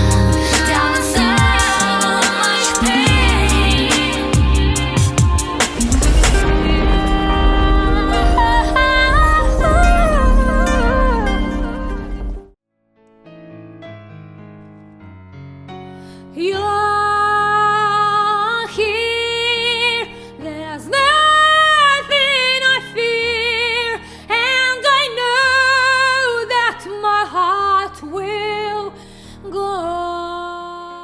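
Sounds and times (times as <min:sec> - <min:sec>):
woman singing with vibrato: 0:00.0 - 0:12.4, 0:16.4 - 0:31.0
soft instrumental accompaniment: 0:00.0 - 0:12.5.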